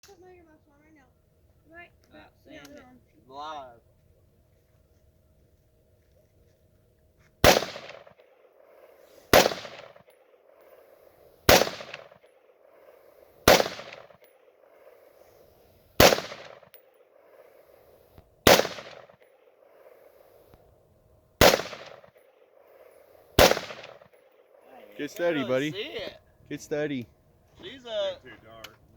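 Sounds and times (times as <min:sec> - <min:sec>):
rifle shots with echo: 0:07.4 - 0:15.2, 0:16.0 - 0:17.8, 0:18.4 - 0:20.2, 0:21.4 - 0:25.3.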